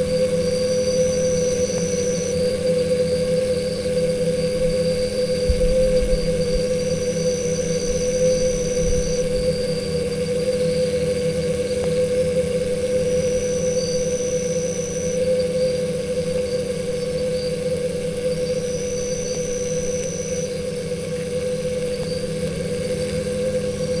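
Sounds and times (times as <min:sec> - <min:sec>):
thin high whistle: 0:00.0 - 0:11.3, 0:12.1 - 0:20.9
bees buzzing: 0:11.2 - 0:24.0.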